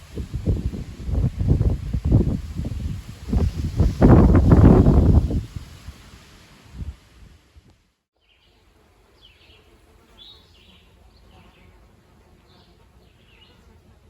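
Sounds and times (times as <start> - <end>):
faint low wind rumble: 0.0 - 7.8.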